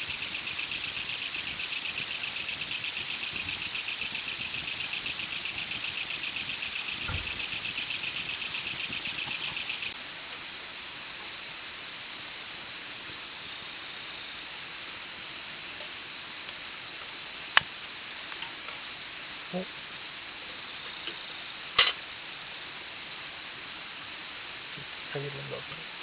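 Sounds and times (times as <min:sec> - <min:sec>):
insect high-pitched trill: 0:15.0 - 0:26.0.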